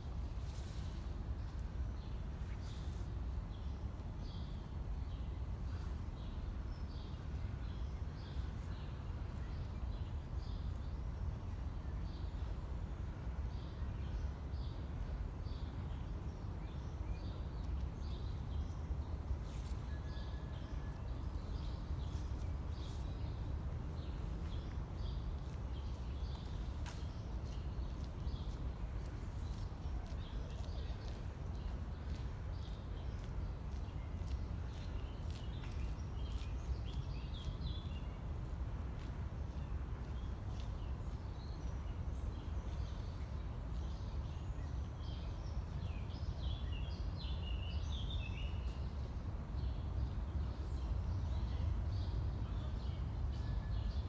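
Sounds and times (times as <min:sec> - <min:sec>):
low city rumble: 0:00.0 - 0:54.0
small birds chirping: 0:24.0 - 0:38.0.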